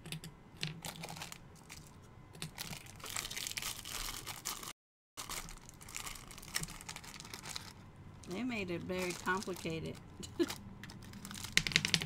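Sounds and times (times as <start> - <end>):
plastic bag crinkling and tearing: 0.8 - 12.0.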